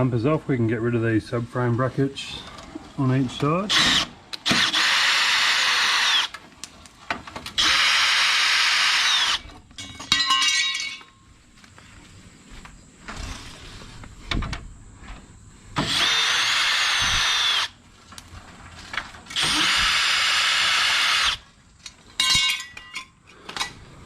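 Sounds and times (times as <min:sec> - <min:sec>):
power drill whining: 0:03.7 - 0:06.4, 0:07.5 - 0:09.5, 0:15.8 - 0:17.8, 0:19.3 - 0:21.4.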